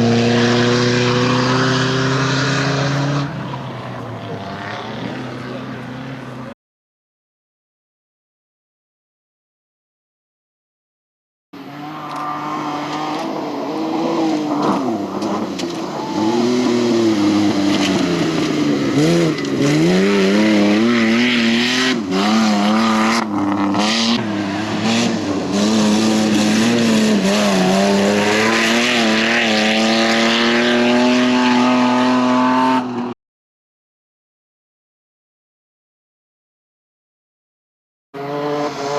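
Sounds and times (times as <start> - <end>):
race car engine revving: 0.0 - 6.5, 11.6 - 33.2, 38.2 - 38.9.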